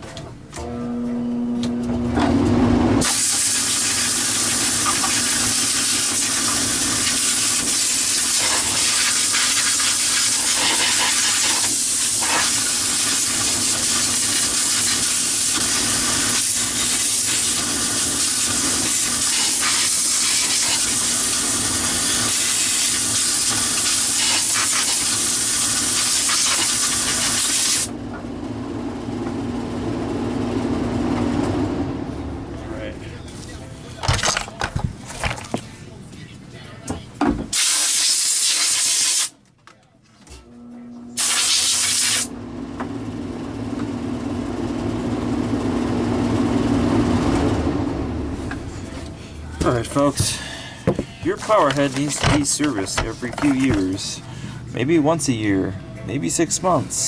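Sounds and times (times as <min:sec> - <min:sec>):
steady hum: 0:00.0 - 0:37.5, 0:40.1 - 0:57.0
compressed air hissing: 0:03.0 - 0:27.9, 0:37.5 - 0:39.3, 0:41.2 - 0:42.3.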